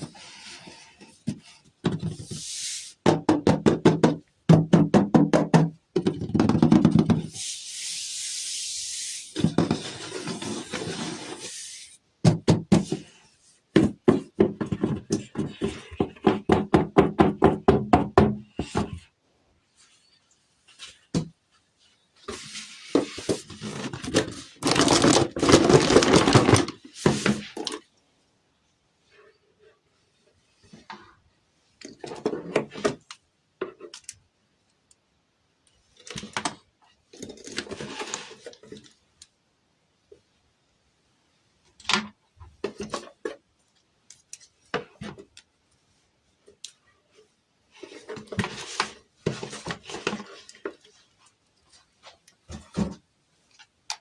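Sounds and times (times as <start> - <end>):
packaging rustling and tearing: 23.6 - 26.8.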